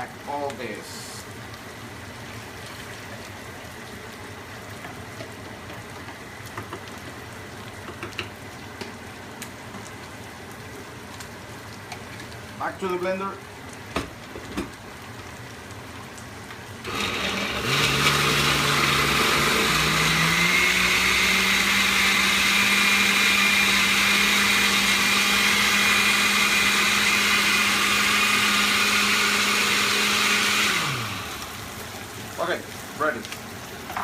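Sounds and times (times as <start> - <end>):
blender running: 16.8 - 32.0.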